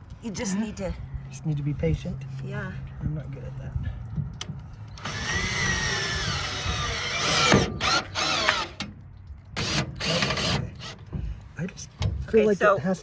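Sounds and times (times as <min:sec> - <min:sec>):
power drill whining under load: 0:05.0 - 0:08.8, 0:09.6 - 0:11.0.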